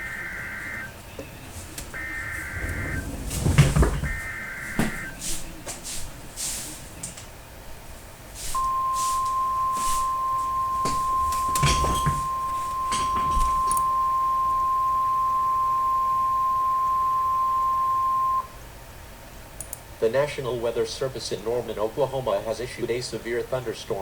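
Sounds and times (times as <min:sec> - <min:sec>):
steady high alert tone: 0:00.0 - 0:01.0, 0:01.9 - 0:05.2, 0:08.6 - 0:18.6
faint crackling static: 0:00.0 - 0:24.0.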